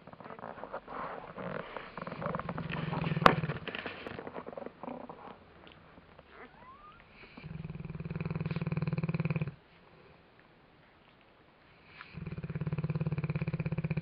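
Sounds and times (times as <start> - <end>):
dog snoring: 0.0 - 5.4, 6.3 - 9.6, 11.8 - 14.0.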